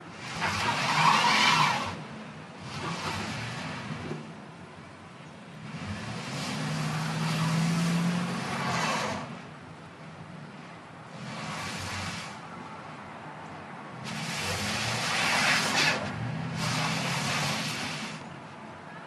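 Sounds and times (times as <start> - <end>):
tyres spinning in snow: 0.0 - 2.0, 14.1 - 18.3
van engine revving: 0.0 - 4.4, 5.5 - 9.5, 11.0 - 12.6, 14.0 - 18.3.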